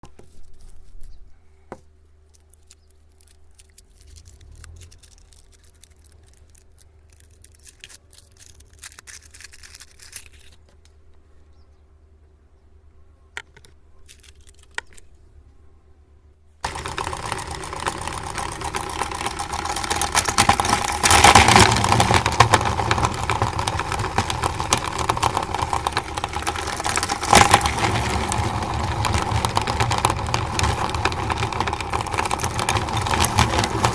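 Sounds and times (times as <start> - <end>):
faint clicks and rustles: 0.0 - 11.3, 16.6 - 33.9
meat grinder motor grinding: 16.6 - 33.9.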